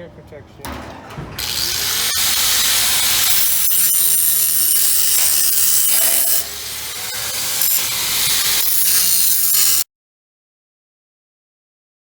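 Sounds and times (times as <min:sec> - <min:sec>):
angle grinder cutting metal: 0:01.4 - 0:09.9.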